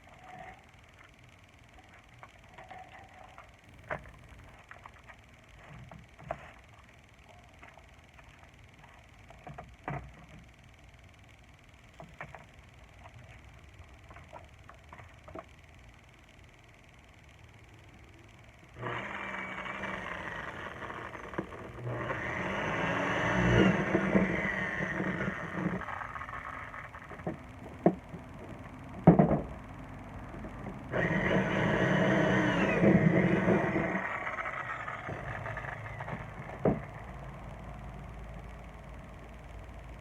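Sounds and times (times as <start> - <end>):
power tool motor running: 18.8 - 27.3, 30.8 - 38.2.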